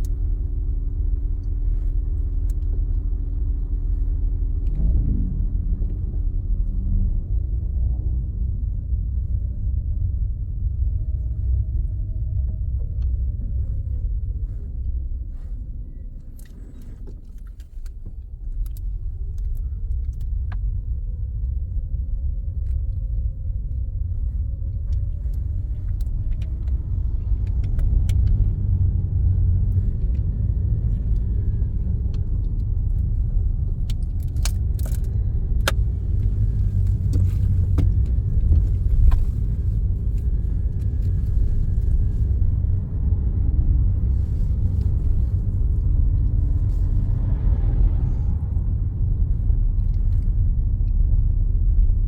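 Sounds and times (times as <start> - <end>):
car engine and road rumble: 0.0 - 52.0
small clicks and rattles: 32.0 - 42.2.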